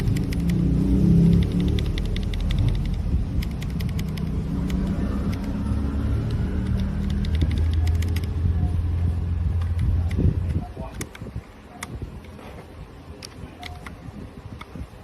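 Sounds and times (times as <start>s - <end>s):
mechanical keyboard typing: 0.0s - 0.6s, 1.2s - 5.6s, 6.2s - 8.4s, 9.6s - 11.9s, 13.2s - 14.0s
steady low rumble: 0.0s - 15.0s.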